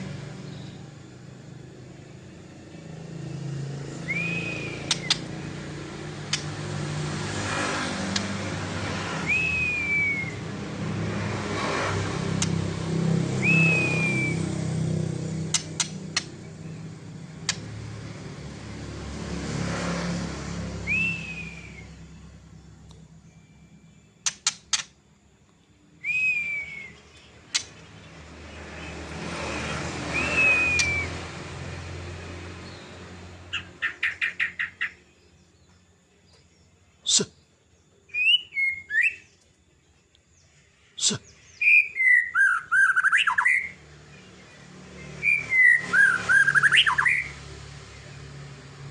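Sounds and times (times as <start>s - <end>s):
vehicle passing: 0.0s - 37.2s, 40.3s - 48.9s
bird chips: 3.4s - 18.4s, 24.2s - 25.0s, 26.0s - 31.2s
songbird whistled calls: 3.9s - 6.5s, 9.0s - 10.6s, 13.3s - 14.8s, 20.8s - 22.2s, 26.0s - 28.1s, 28.8s - 31.4s, 33.5s - 35.0s, 38.1s - 39.4s, 41.3s - 44.3s, 45.0s - 47.4s.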